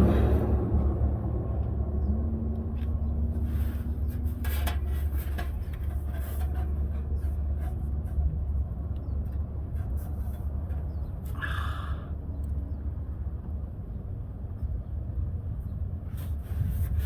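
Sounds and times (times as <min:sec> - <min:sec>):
low rumble: 0:00.0 - 0:03.3.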